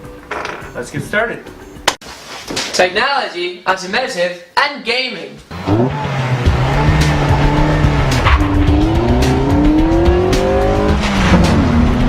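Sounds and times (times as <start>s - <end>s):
car engine accelerating hard: 5.5s - 12.0s
music with steady beat: 6.5s - 12.0s.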